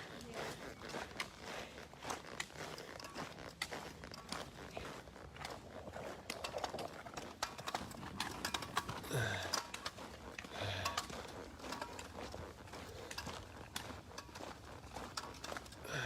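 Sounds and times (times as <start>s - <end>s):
footsteps crunching on trail: 0.0s - 16.0s
person grunting or sighing: 9.0s - 9.6s.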